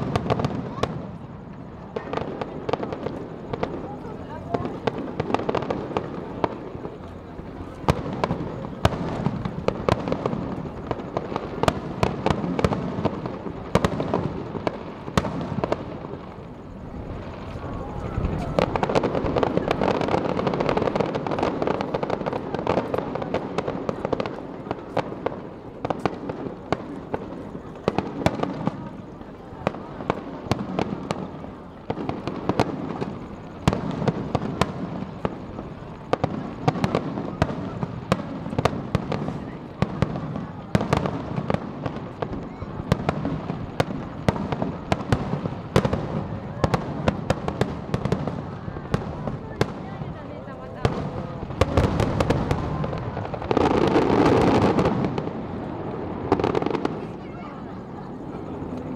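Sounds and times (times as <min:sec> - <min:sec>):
fireworks bangs and cracks: 0:00.0 - 0:58.9
fireworks crackle: 0:00.0 - 0:58.9
rumble of explosions: 0:00.0 - 0:58.9.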